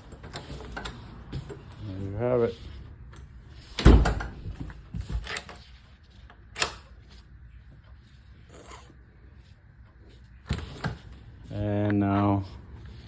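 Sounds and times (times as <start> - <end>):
door shutting with a thump: 3.8 - 4.7.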